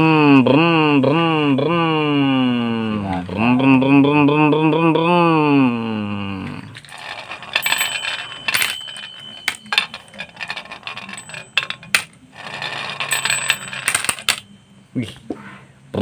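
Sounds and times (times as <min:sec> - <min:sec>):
toy vehicles clattering: 0:06.8 - 0:14.5
faint metallic ringing: 0:07.1 - 0:15.2.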